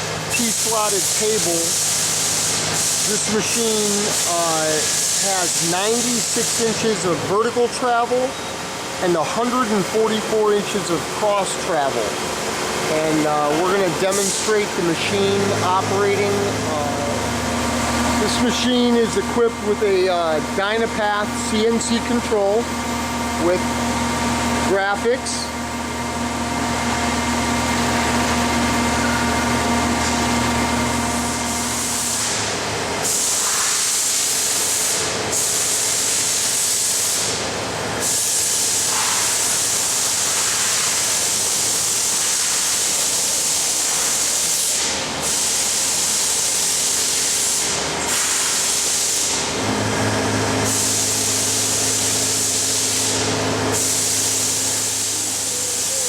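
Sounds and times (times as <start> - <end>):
boring mill loud hiss: 0.2 - 23.8, 26.6 - 37.4, 38.0 - 56.0
low motor hum: 8.3 - 32.0, 49.6 - 56.0.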